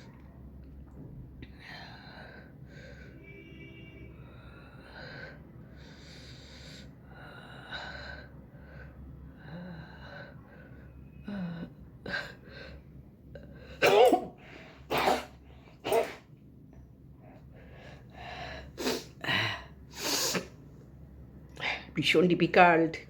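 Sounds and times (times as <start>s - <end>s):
person sneezing loudly: 13.8s - 16.3s.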